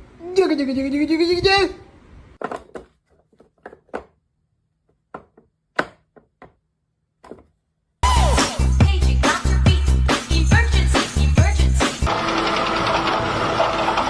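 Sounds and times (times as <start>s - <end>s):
short irregular knocks: 4.9s - 6.6s.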